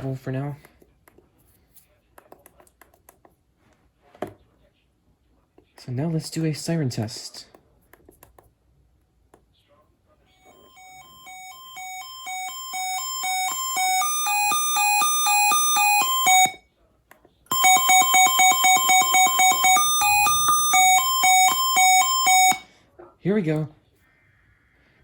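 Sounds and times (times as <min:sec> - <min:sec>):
two-tone electronic alert beeping: 0:10.4 - 0:16.6, 0:17.5 - 0:22.7.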